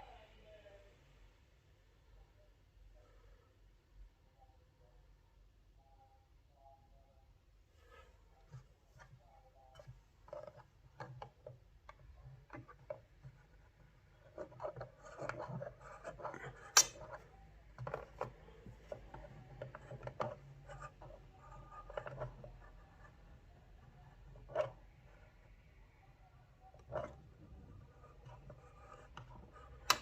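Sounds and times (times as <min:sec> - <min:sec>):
alarm clock being handled: 0:12.4 - 0:20.4, 0:29.2 - 0:30.0.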